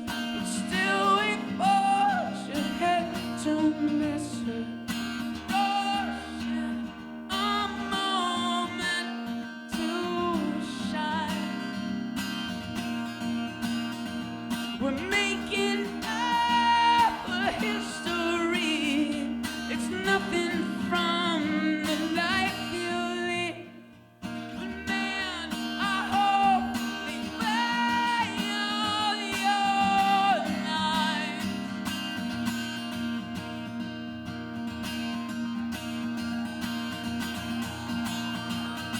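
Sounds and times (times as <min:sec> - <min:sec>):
strummed acoustic guitar: 0:00.0 - 0:38.9
person singing: 0:00.3 - 0:11.6, 0:14.8 - 0:23.8, 0:24.4 - 0:31.7.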